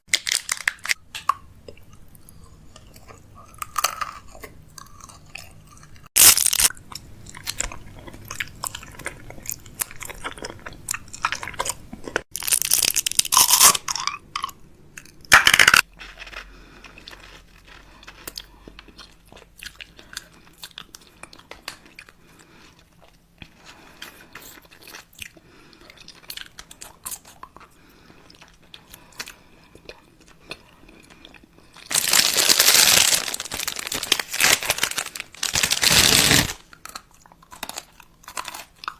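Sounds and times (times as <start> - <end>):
crunchy chewing: 15.8 - 38.9
loud crinkling rustle: 31.9 - 36.6.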